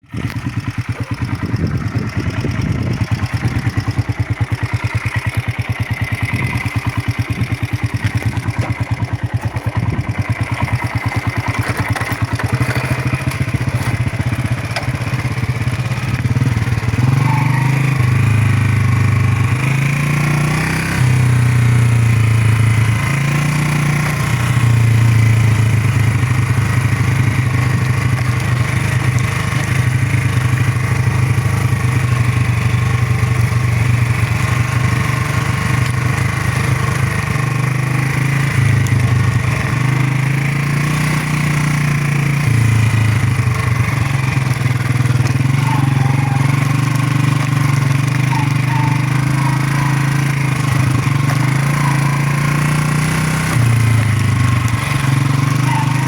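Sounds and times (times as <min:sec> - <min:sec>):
motorcycle engine revving: 0:00.0 - 0:56.0.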